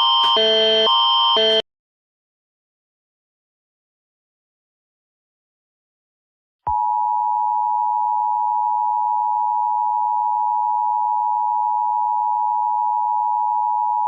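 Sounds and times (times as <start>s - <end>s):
loud steady electronic tone: 0.0s - 1.6s.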